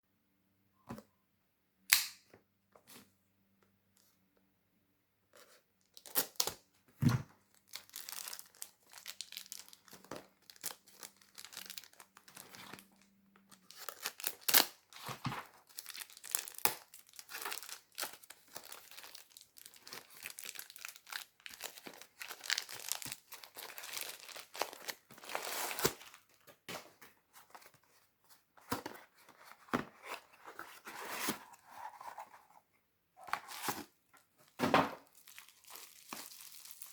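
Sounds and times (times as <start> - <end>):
packaging tearing and crinkling: 7.7 - 26.2, 35.0 - 36.9.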